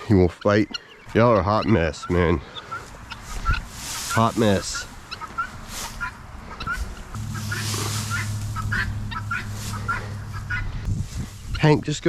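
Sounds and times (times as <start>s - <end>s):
poultry clucking: 0.0s - 11.7s
steady low hum: 6.9s - 12.0s.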